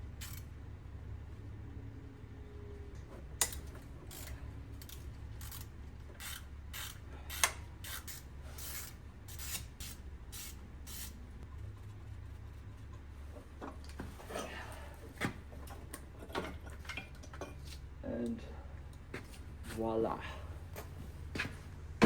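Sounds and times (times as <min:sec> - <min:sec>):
low steady hum: 0:00.0 - 0:22.0
sharp metal clicks: 0:03.4 - 0:08.2.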